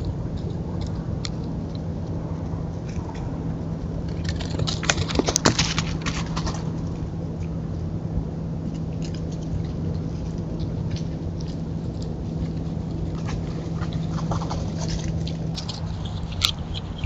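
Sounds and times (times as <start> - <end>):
animal footsteps rustling: 0.0 - 17.0
steady low hum: 0.0 - 17.0.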